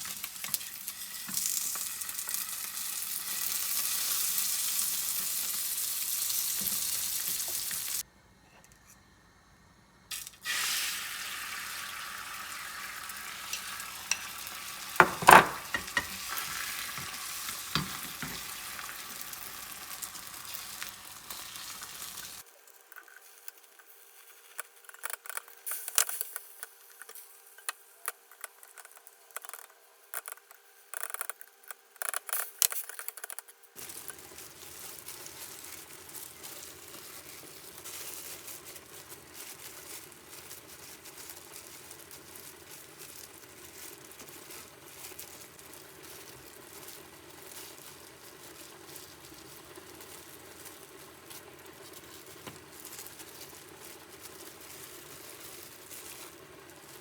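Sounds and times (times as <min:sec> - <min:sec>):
food sizzling in frying pan: 0:00.0 - 0:08.0, 0:10.1 - 0:24.6, 0:33.8 - 0:57.0
utensil clanking against pan: 0:13.4 - 0:18.5
cookware clicks and taps: 0:15.0 - 0:16.2, 0:17.7 - 0:18.4.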